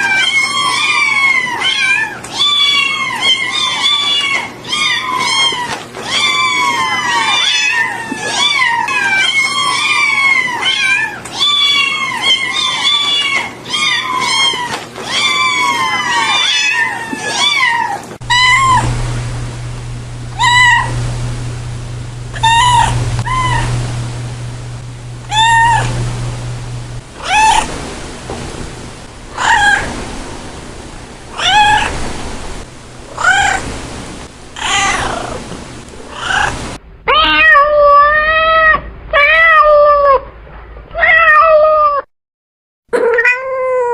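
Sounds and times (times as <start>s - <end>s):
cat meowing: 0.0s - 18.9s, 20.4s - 20.9s, 22.4s - 23.7s, 25.3s - 25.9s, 27.2s - 27.7s, 29.4s - 29.9s, 31.3s - 31.9s, 33.1s - 33.6s, 34.6s - 35.4s, 37.1s - 40.3s, 41.0s - 42.1s, 43.0s - 43.9s
low steady hum: 18.2s - 41.0s.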